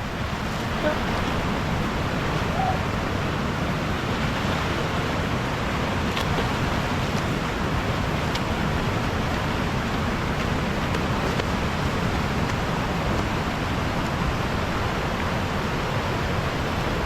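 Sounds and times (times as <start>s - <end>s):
waterfall rushing: 0.0s - 10.9s.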